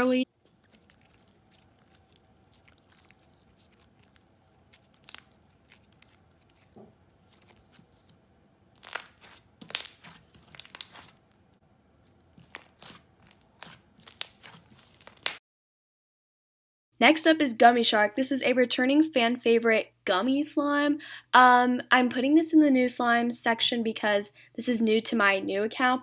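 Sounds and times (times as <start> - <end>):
slime stretched by hand: 0.3 - 8.2, 8.8 - 11.3, 12.4 - 15.4.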